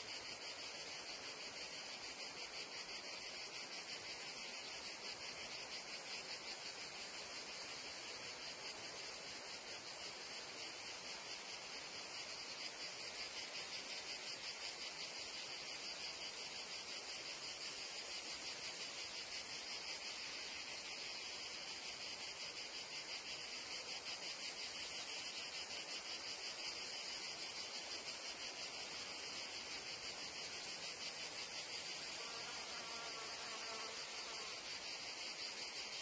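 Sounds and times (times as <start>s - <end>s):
crickets and cicadas chirring: 0.0s - 36.0s
fly buzzing: 30.3s - 35.4s.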